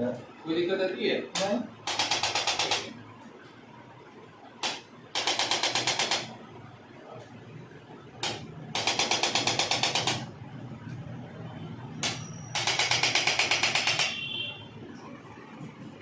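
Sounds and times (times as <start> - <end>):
rapid mechanical tapping: 1.3 - 2.9, 4.6 - 6.4, 8.2 - 10.3, 12.0 - 14.2.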